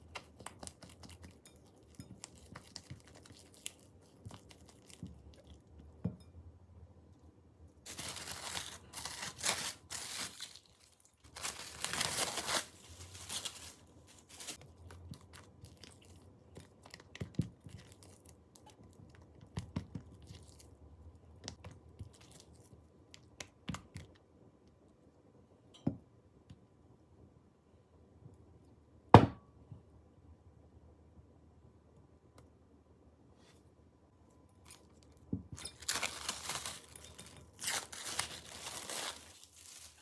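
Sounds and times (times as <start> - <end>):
tearing crinkling noise: 7.9 - 17.1, 34.7 - 40.0.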